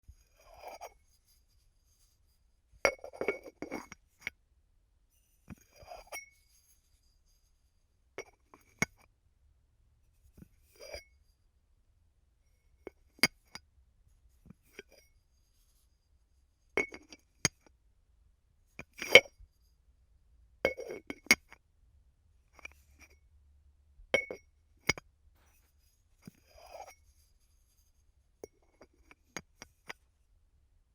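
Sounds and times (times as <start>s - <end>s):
ceramic lid clinking on bowl: 24.2s - 25.0s.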